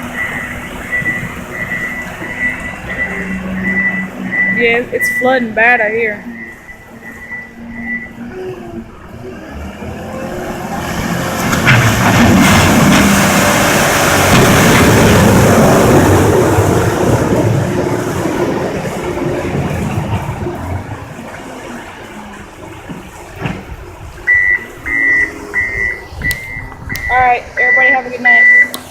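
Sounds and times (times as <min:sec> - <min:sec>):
heavy vehicle engine passing: 0:00.0 - 0:28.9.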